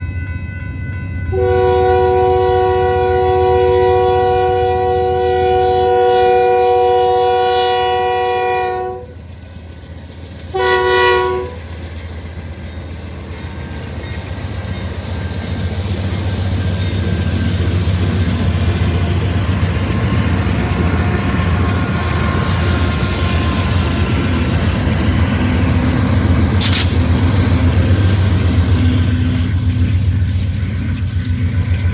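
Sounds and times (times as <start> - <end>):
freight train rumble: 0.0 - 31.9
locomotive air horn: 1.3 - 9.1, 10.5 - 11.6, 26.6 - 27.7.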